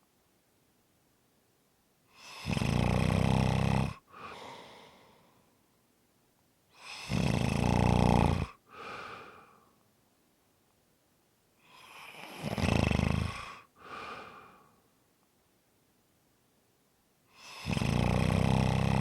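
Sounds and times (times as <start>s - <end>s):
person snoring: 2.2s - 4.9s, 6.8s - 9.5s, 11.6s - 14.6s, 17.4s - 19.0s
soft breath: 4.1s - 5.7s, 8.7s - 9.9s, 13.4s - 15.0s.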